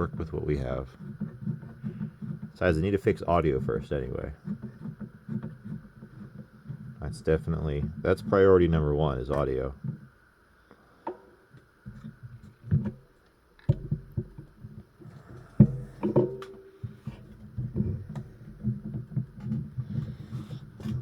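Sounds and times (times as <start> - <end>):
low irregular rubbing: 0.0 - 10.4, 14.0 - 21.0.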